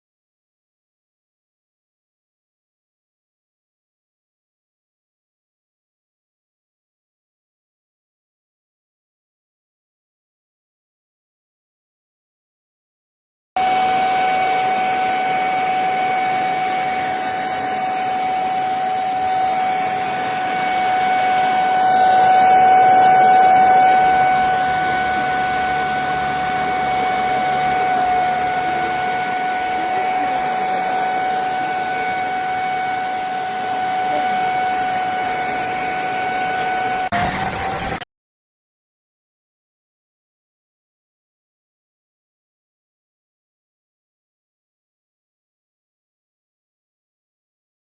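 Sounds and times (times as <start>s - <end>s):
vacuum cleaner motor whine: 13.6s - 38.0s.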